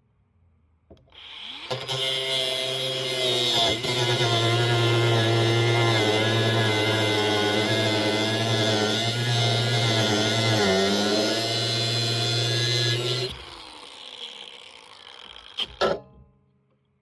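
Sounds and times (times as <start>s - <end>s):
power tool cutting rail: 0.9s - 16.2s.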